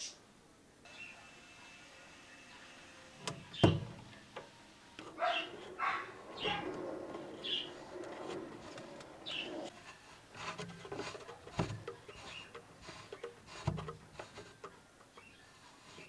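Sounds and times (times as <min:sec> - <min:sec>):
dull thumps: 0:03.2 - 0:16.0
rubbing and scraping with clicks: 0:03.2 - 0:16.0
bird chirping: 0:03.3 - 0:09.8, 0:15.0 - 0:16.0.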